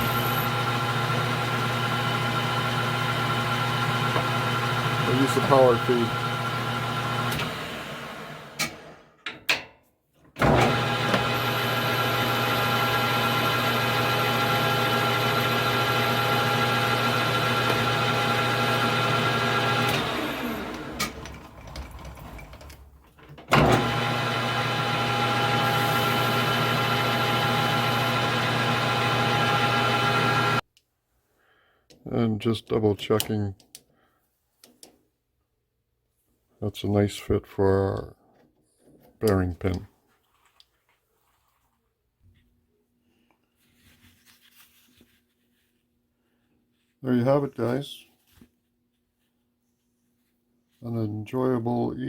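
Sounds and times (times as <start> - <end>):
metal lathe motor hum: 0.0 - 8.9, 10.4 - 22.8, 23.5 - 30.6.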